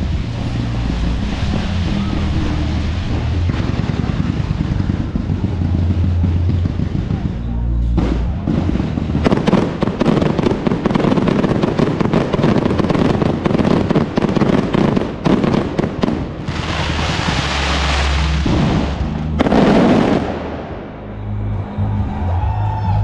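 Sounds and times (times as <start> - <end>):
firework hissing rush: 0.0 - 5.6, 9.2 - 20.8
firecrackers crackling: 0.0 - 21.2
loud firework burst: 0.0 - 21.2.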